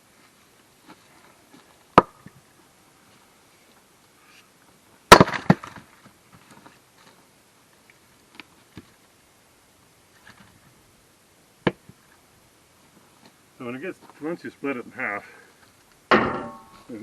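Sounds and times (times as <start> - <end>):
maul striking firewood: 1.9 - 2.4, 5.1 - 5.9, 11.6 - 12.0, 16.1 - 16.9
wood knocks: 16.1 - 16.9.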